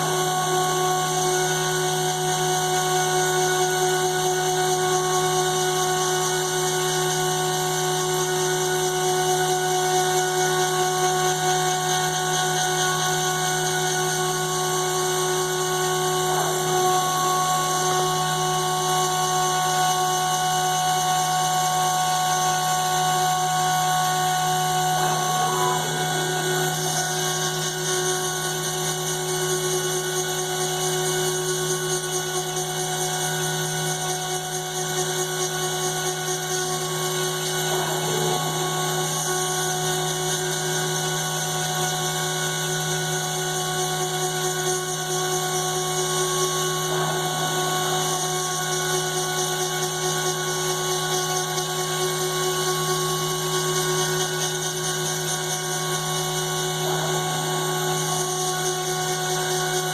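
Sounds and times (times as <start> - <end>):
cnc router spindle whine: 0.0 - 59.9.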